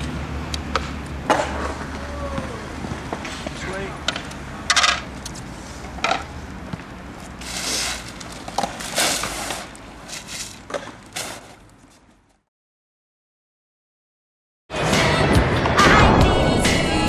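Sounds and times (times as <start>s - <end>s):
rustling crackling noises: 5.1s - 12.4s.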